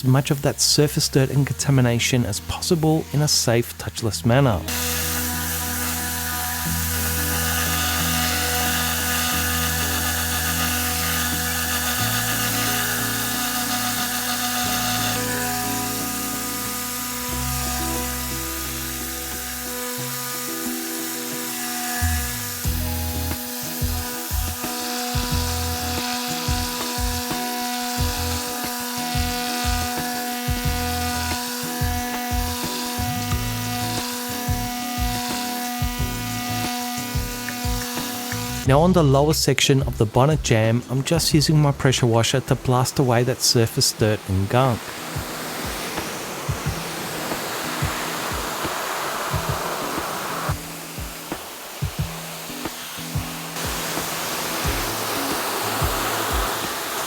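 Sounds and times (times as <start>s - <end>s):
compressed air hissing: 0.0s - 4.0s, 4.6s - 38.7s, 42.4s - 57.0s
background music with bass line: 0.0s - 42.7s, 50.5s - 57.0s.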